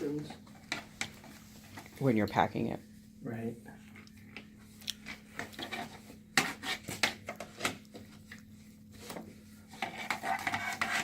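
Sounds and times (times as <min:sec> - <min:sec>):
rubbing: 0:09.6 - 0:11.0.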